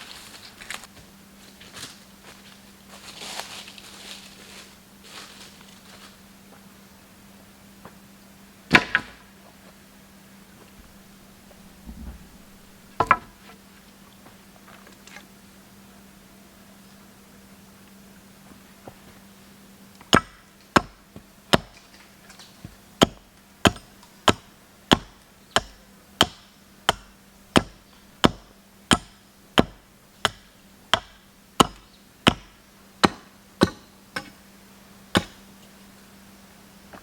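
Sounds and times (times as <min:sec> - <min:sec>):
blade chopping wood: 0:08.7 - 0:09.2, 0:20.0 - 0:21.8, 0:23.0 - 0:34.4, 0:35.2 - 0:35.4.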